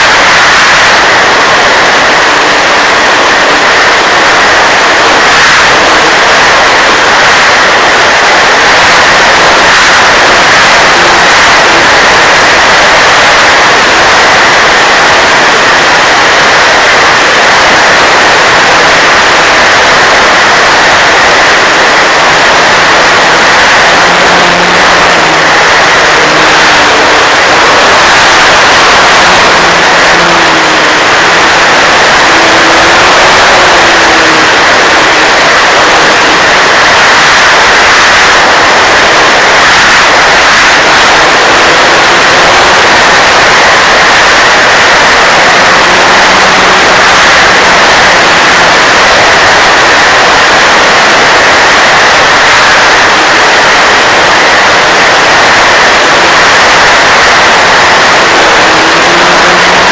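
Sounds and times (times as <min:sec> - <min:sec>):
model plane motor and wind roar: 0:00.0 - 0:59.9.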